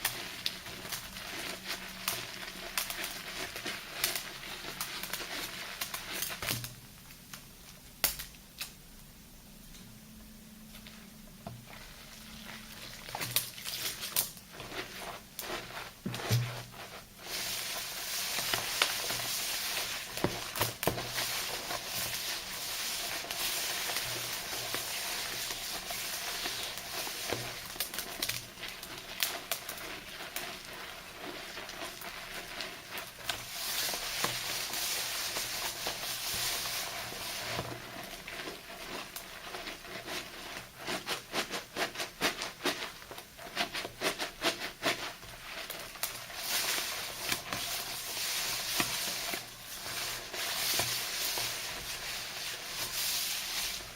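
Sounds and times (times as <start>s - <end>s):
wet crackly scrubbing by hand: 11.7s - 53.9s.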